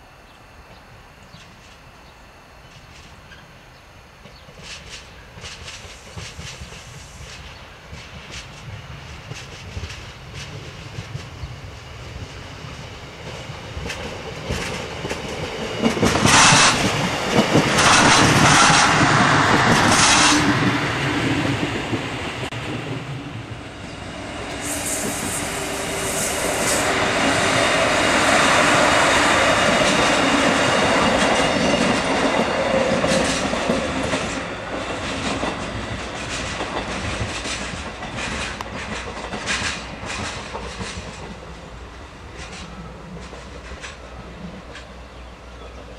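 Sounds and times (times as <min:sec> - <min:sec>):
train wheels clacking over points: 0:04.2 - 0:11.4, 0:13.2 - 0:22.1, 0:28.6 - 0:41.6.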